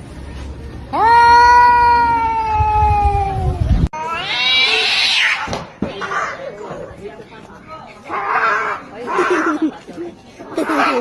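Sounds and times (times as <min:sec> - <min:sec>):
cat meowing: 0:04.0 - 0:05.4.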